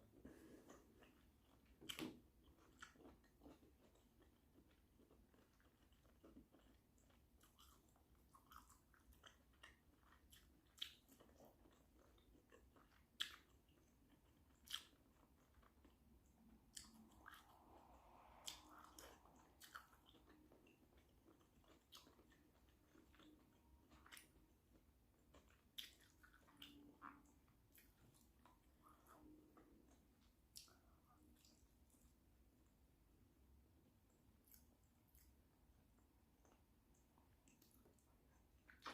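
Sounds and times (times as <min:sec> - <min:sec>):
person chewing food: 0:00.0 - 0:32.8, 0:33.9 - 0:38.9
wet mouth clicks: 0:16.7 - 0:20.8.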